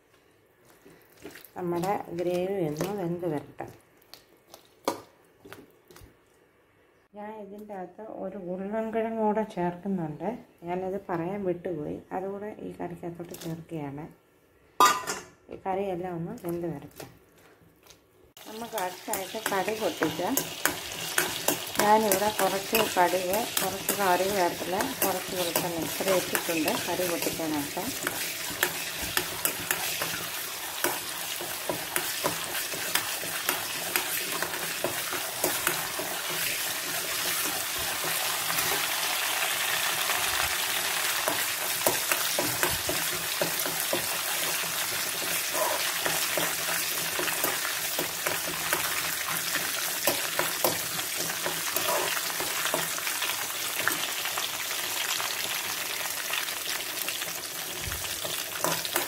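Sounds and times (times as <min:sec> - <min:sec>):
seeds sizzling in hot oil: 0:18.4 - 0:59.0.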